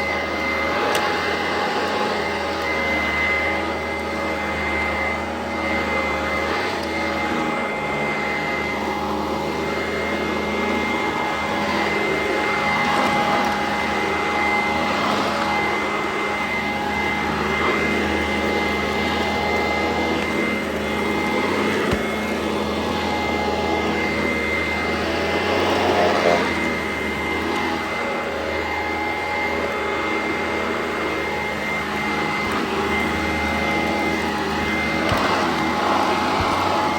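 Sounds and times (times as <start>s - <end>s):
vacuum cleaner running: 0.0s - 36.9s.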